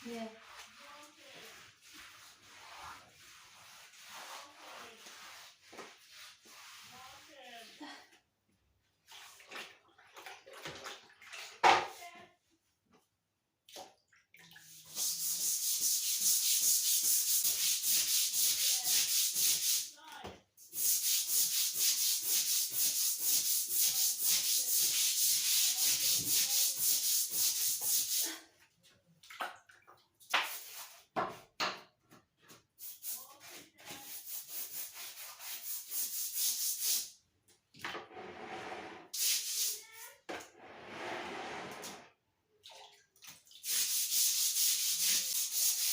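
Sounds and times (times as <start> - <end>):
brush scrubbing a floor: 0.0 - 8.0, 14.6 - 20.0, 20.6 - 28.5, 30.3 - 31.6, 32.4 - 37.1, 38.1 - 42.1, 43.6 - 45.9.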